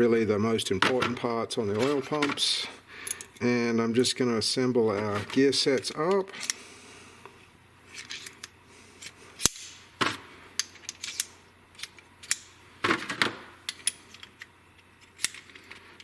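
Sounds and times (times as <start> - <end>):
metal parts clicking and knocking: 10.6 - 16.0.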